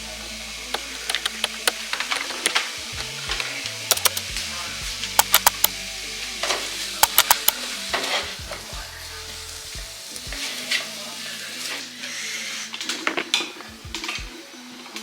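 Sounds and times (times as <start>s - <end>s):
utensil clicking against pan: 0.8s - 2.6s, 3.9s - 4.2s, 5.2s - 5.7s, 7.0s - 7.6s
food sizzling in a frying pan: 7.7s - 13.6s.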